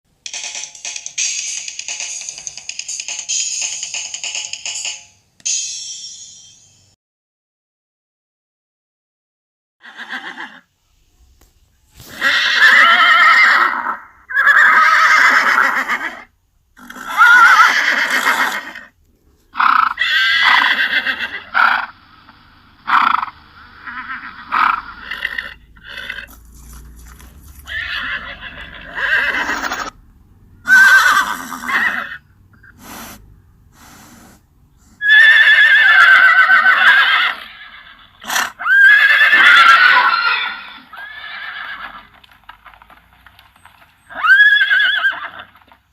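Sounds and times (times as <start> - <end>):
horse whinnying: 9.8 - 10.6, 12.1 - 18.9, 19.6 - 21.9, 22.9 - 29.9, 30.6 - 32.2, 35.0 - 42.3, 44.1 - 45.8.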